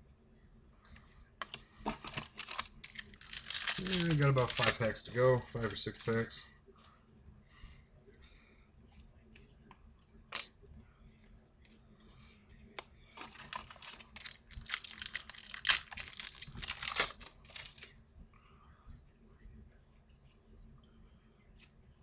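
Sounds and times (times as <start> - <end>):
wrapper being torn and crinkled: 2.0 - 6.3, 13.2 - 17.9.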